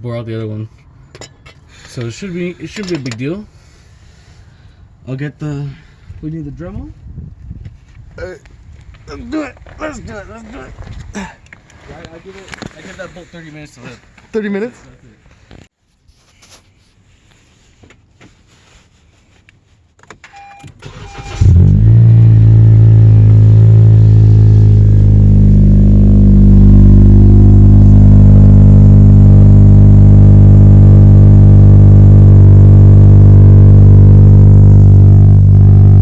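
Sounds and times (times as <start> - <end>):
car engine idling: 21.2 - 36.0.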